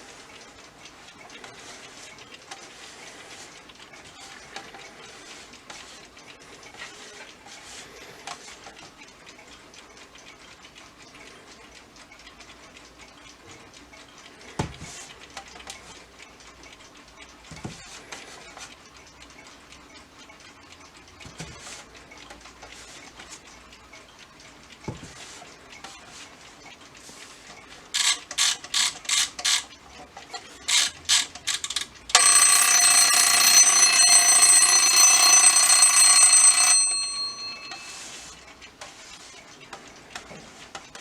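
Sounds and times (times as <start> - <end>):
alarm clock ticking: 15.2 - 39.3.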